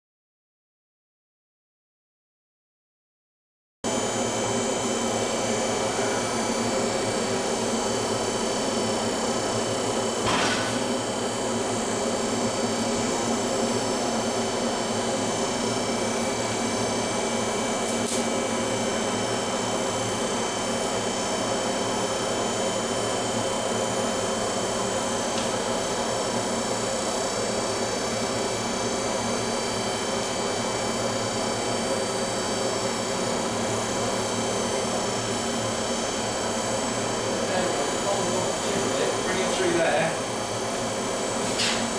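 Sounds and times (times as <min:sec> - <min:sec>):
forge burner rushing hum: 0:03.9 - 0:41.9.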